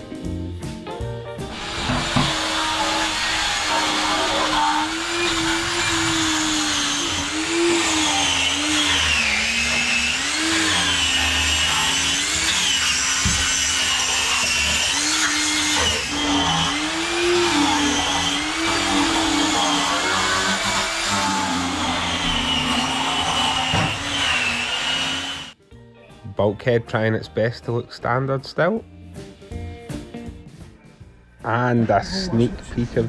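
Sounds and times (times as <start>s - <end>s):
power tool motor whining: 1.5s - 25.6s.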